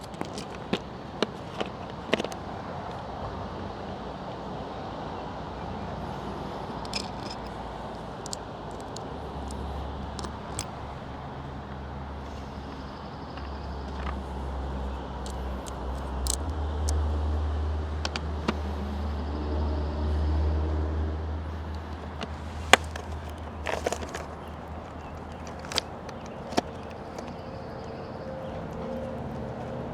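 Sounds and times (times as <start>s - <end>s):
small clicks and taps: 15.2s - 17.0s, 21.8s - 29.0s.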